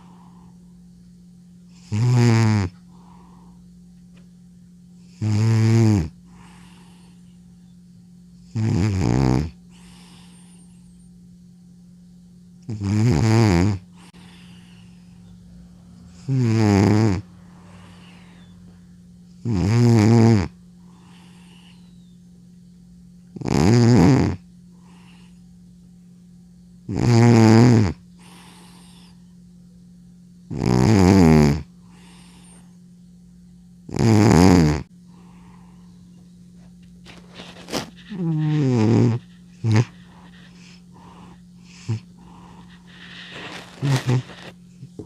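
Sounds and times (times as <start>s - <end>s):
cat snoring: 1.8s - 3.6s, 5.1s - 7.2s, 8.4s - 10.8s, 12.7s - 15.1s, 16.1s - 18.5s, 19.4s - 21.8s, 23.3s - 25.3s, 26.9s - 29.2s, 30.5s - 32.7s, 33.9s - 35.7s, 37.1s - 45.0s
cat breathing: 37.6s - 44.5s.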